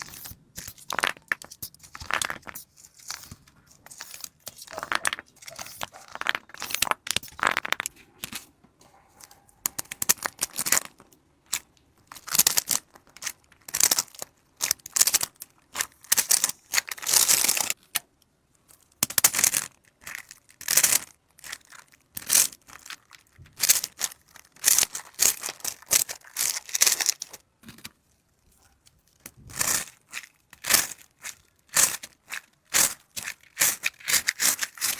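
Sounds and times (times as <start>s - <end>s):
plastic packaging crinkling: 19.3s - 27.4s.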